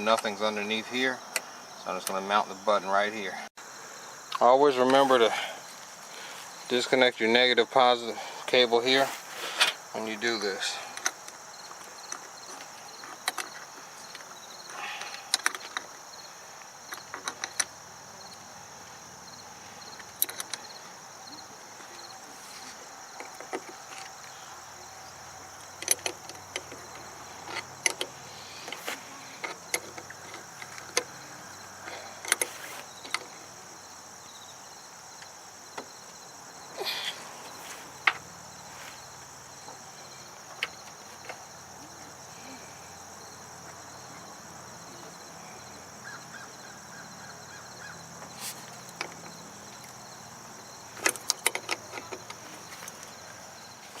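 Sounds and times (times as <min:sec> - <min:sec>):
crickets chirping: 0:00.0 - 0:54.0
tools clicking and knocking: 0:25.8 - 0:31.1, 0:51.0 - 0:53.1.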